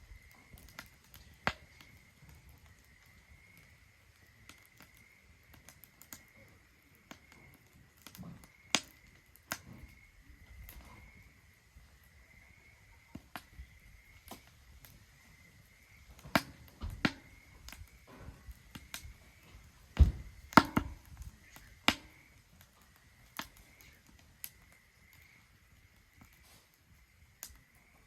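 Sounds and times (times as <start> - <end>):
firewood crackling and popping: 0.0 - 28.0
wood knocks and snaps: 20.0 - 21.2.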